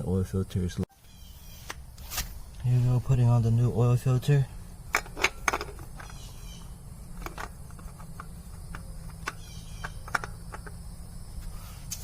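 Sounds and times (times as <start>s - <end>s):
faint insect chirping: 0.0s - 12.0s
low steady hum: 0.1s - 12.0s.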